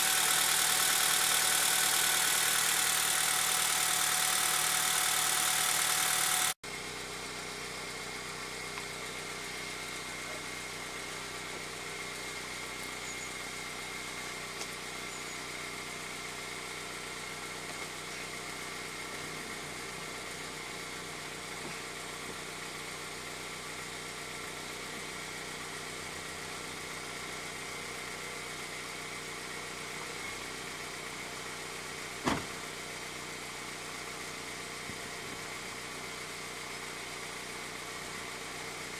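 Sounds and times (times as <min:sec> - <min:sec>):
car engine idling: 0:00.0 - 0:38.9.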